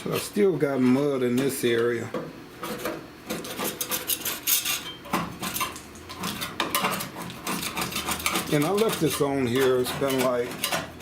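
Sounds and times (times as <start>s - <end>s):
metal tool scraping steel panel: 2.6s - 11.0s.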